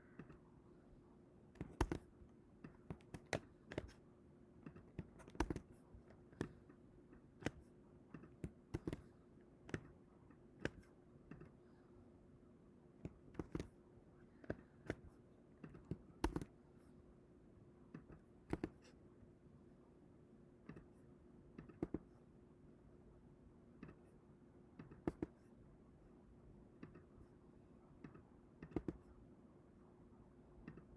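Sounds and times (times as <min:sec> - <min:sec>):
faint steady hum: 0:00.0 - 0:30.9
mouse and keyboard clicks: 0:01.6 - 0:04.0, 0:04.7 - 0:06.8, 0:07.4 - 0:11.6, 0:13.0 - 0:13.8, 0:14.4 - 0:16.6, 0:18.0 - 0:19.0, 0:21.6 - 0:22.1, 0:24.8 - 0:25.4, 0:28.0 - 0:29.1.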